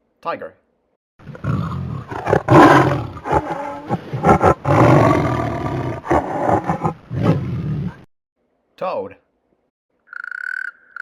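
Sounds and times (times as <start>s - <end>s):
tiger roaring: 1.2s - 8.1s.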